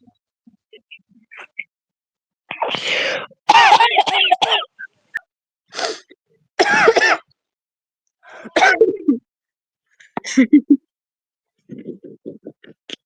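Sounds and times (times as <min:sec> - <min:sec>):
harsh coughs: 0:02.5 - 0:04.9, 0:06.6 - 0:07.3, 0:08.5 - 0:08.9.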